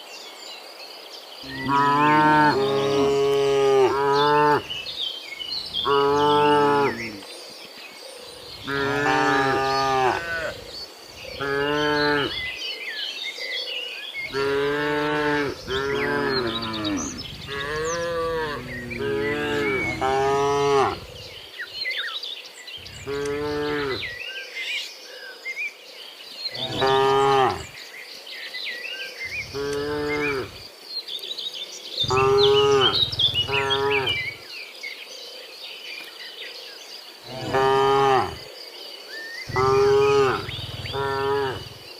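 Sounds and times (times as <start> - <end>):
cattle mooing: 1.5 - 4.7, 8.6 - 10.6, 14.3 - 21.2, 22.9 - 24.1, 26.6 - 27.7, 29.4 - 30.6, 32.0 - 34.4, 37.3 - 38.4, 39.5 - 41.8.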